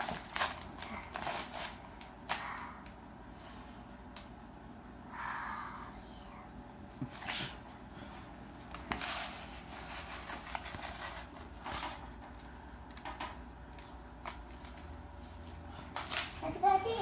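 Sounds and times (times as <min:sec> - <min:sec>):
rustling and scraping handling: 0:00.0 - 0:02.1, 0:06.9 - 0:17.0
low background hum: 0:00.0 - 0:17.0.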